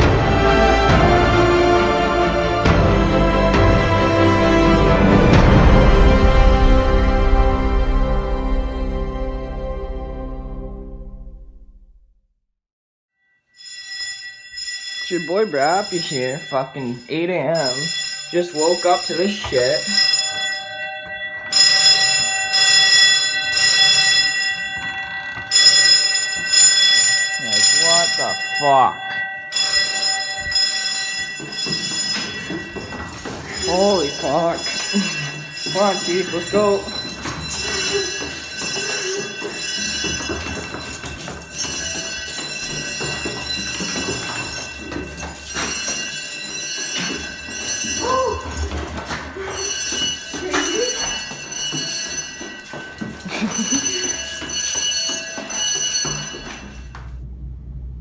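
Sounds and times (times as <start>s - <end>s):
fire alarm ringing: 0.0s - 10.3s, 13.4s - 57.3s
knocks and movement: 14.5s - 58.0s.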